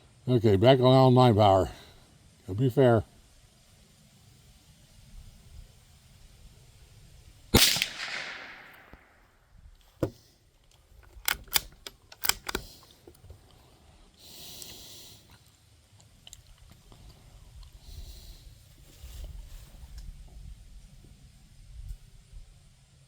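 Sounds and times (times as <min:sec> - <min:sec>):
rifle shot with echo: 0:07.6 - 0:09.2
rifle bolt clicking and scraping: 0:10.0 - 0:13.3.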